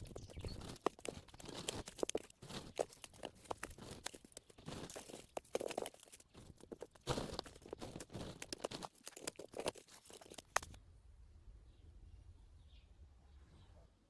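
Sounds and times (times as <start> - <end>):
cut grass crunching and rustling: 0.0 - 10.8.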